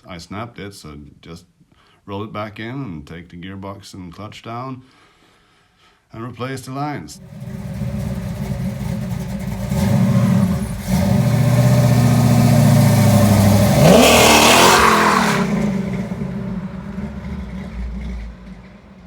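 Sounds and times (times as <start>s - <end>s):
car engine revving: 7.2s - 19.0s.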